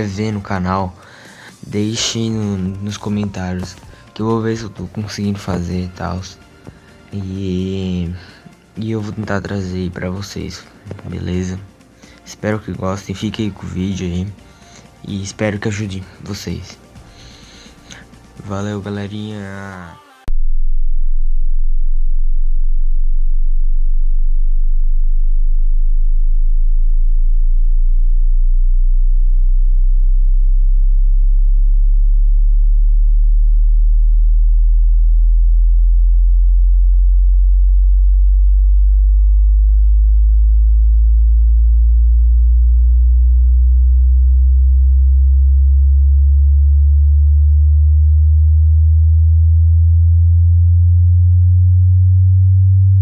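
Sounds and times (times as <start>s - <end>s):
low sine tone rising in pitch: 19.8s - 53.0s.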